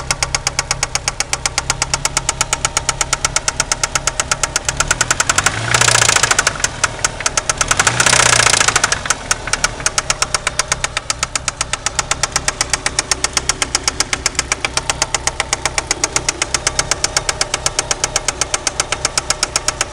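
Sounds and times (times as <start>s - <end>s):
car engine knocking: 0.0s - 19.9s
engine revving: 1.5s - 19.9s.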